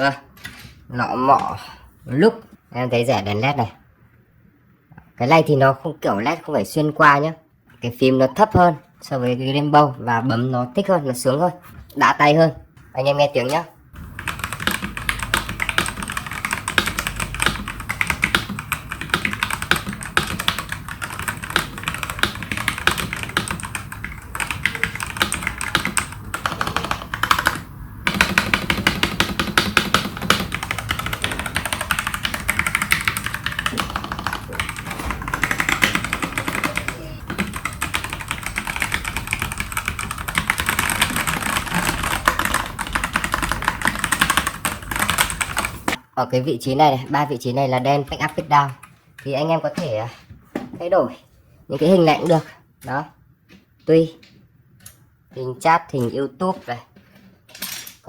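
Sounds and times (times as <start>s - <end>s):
fast typing on mechanical keyboard: 14.0s - 46.0s.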